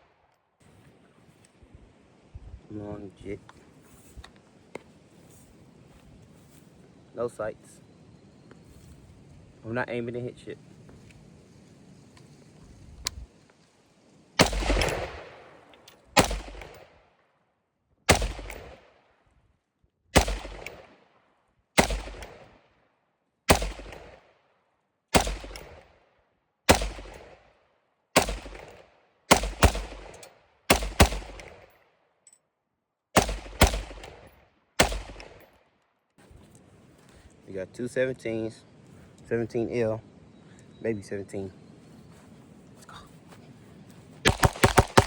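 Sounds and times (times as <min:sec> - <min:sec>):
pistol shots with echo: 0:14.4 - 0:15.6, 0:16.2 - 0:16.9, 0:18.1 - 0:18.9, 0:20.2 - 0:21.0, 0:21.8 - 0:22.5, 0:23.5 - 0:24.3, 0:25.1 - 0:25.9, 0:26.7 - 0:27.4, 0:28.2 - 0:31.7, 0:33.2 - 0:35.4, 0:44.3 - 0:45.0.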